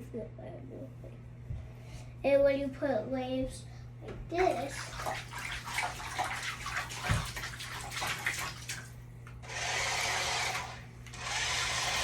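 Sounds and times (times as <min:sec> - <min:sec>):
bathtub water splashing: 0:04.3 - 0:12.0
steady whirring noise: 0:09.3 - 0:12.0.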